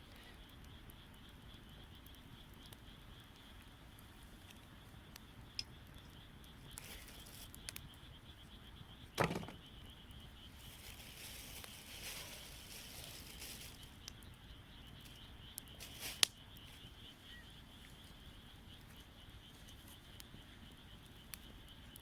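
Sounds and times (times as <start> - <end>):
campfire crackling: 0.0 - 22.0.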